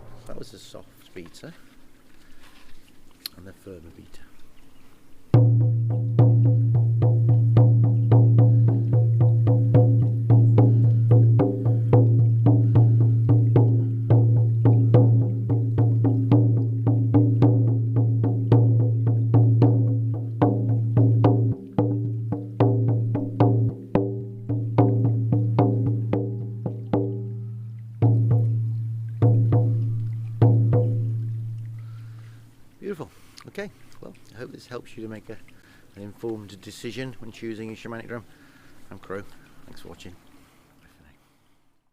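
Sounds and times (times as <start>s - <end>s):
hand drum beaten: 5.3s - 32.0s.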